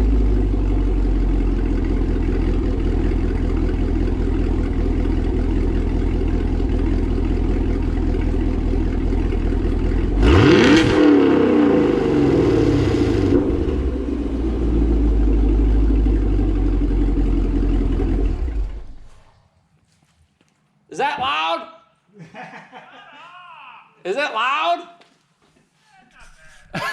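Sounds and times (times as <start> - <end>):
car engine idling and revving: 0.0 - 19.2.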